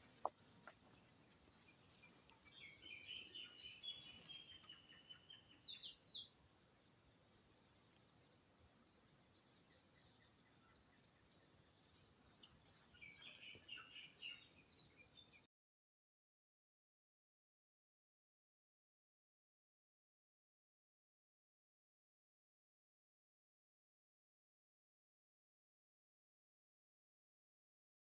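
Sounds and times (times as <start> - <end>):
faint songbirds chirping: 0.0 - 15.5.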